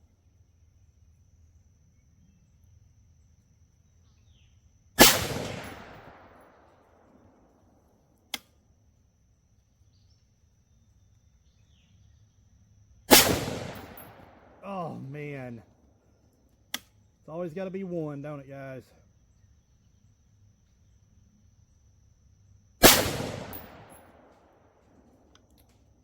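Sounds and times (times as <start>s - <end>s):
rifle shots with echo: 5.0s - 6.7s, 13.1s - 15.4s, 22.8s - 24.4s.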